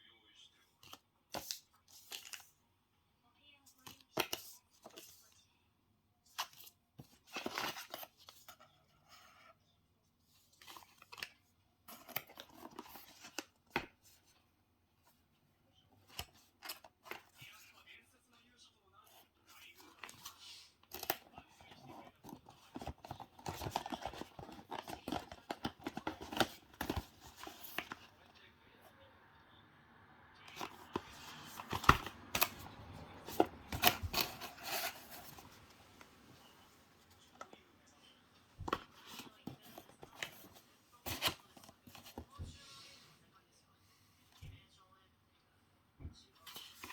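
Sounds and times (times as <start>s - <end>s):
packaging rustling: 19.8s - 28.2s, 30.5s - 37.6s.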